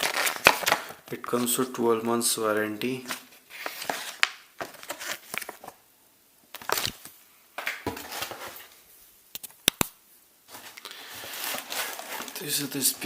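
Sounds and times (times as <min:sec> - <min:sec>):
packaging rustling: 0:00.0 - 0:01.6, 0:03.0 - 0:05.8, 0:06.5 - 0:07.1, 0:10.5 - 0:13.0.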